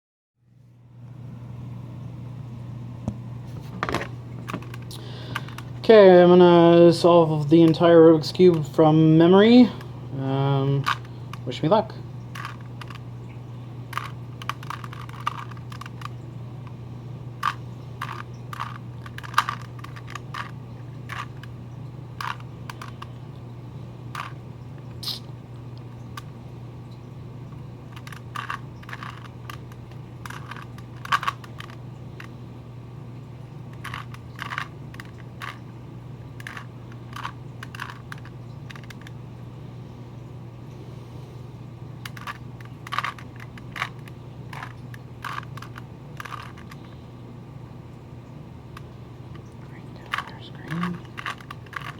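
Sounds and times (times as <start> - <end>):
steady low hum: 0.4 - 51.9
puzzle cube clicking as turned: 10.8 - 11.0, 12.4 - 13.0, 13.9 - 16.2, 17.4 - 21.5, 22.2 - 23.2, 24.2 - 24.4, 27.9 - 32.3, 33.7 - 35.6, 36.4 - 39.1, 42.0 - 46.8, 50.0 - 51.9.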